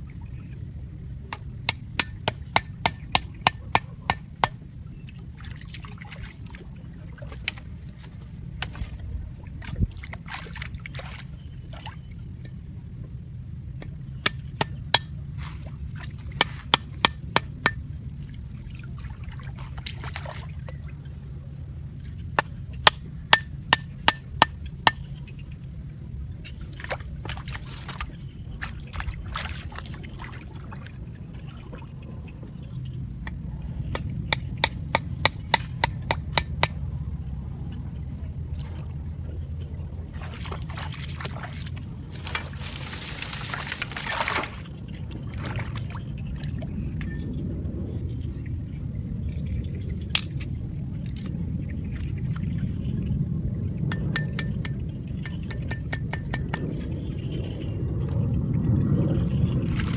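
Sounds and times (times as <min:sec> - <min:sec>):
steady low rumble: 0:00.0 - 0:59.9
water trickling and sloshing: 0:00.0 - 0:59.9
rushing water splash: 0:40.1 - 0:46.7, 0:59.5 - 0:59.9.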